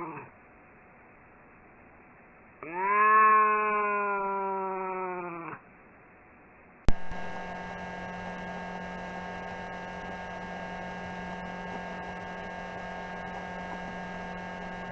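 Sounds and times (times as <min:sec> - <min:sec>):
steady electrical hum: 0:06.9 - 0:14.9.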